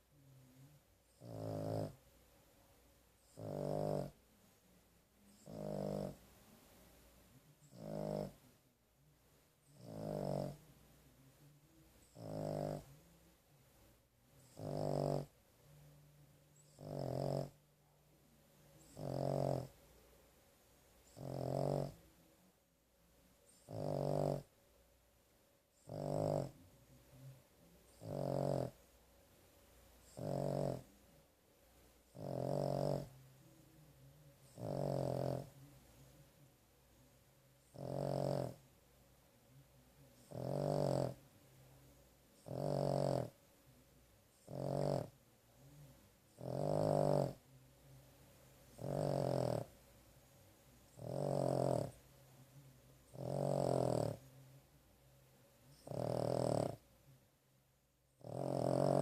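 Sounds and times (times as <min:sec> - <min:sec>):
dog snoring: 0:00.4 - 0:02.0, 0:03.2 - 0:04.2, 0:05.3 - 0:06.2, 0:07.6 - 0:08.5, 0:09.6 - 0:10.7, 0:12.0 - 0:13.1, 0:14.4 - 0:15.4, 0:16.6 - 0:17.6, 0:18.8 - 0:19.8, 0:21.0 - 0:22.0, 0:23.5 - 0:24.5, 0:25.8 - 0:26.6, 0:27.8 - 0:28.8, 0:30.0 - 0:31.0, 0:32.0 - 0:33.2, 0:34.3 - 0:36.1, 0:37.6 - 0:38.6, 0:40.2 - 0:41.2, 0:42.4 - 0:43.4, 0:44.4 - 0:47.4, 0:48.7 - 0:49.8, 0:50.9 - 0:52.0, 0:53.1 - 0:54.3, 0:55.7 - 0:56.8, 0:58.2 - 0:59.0.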